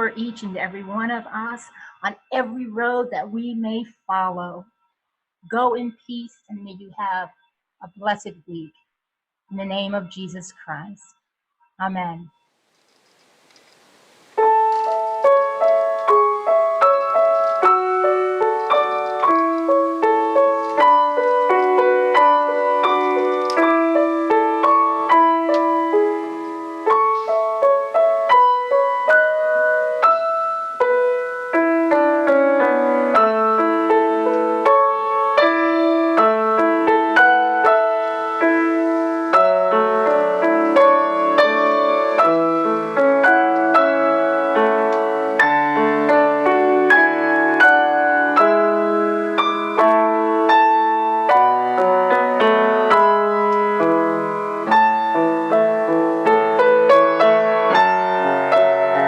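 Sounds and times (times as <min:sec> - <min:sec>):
piano music: 0:14.3 - 0:59.0.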